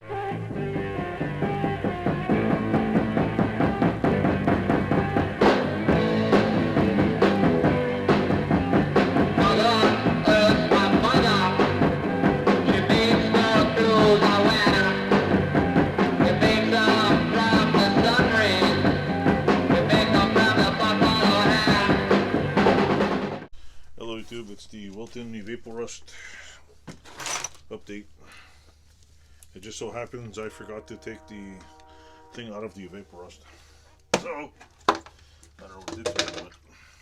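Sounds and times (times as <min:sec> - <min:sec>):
person singing: 0:00.0 - 0:23.1
rock music with steady beat: 0:00.2 - 0:23.4.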